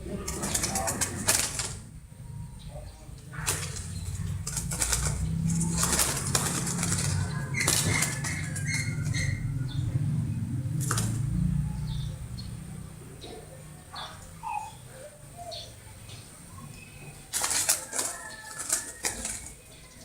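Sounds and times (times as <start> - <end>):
bird wings flapping: 0.2 - 1.9, 3.4 - 9.3, 10.8 - 11.2, 17.3 - 19.6.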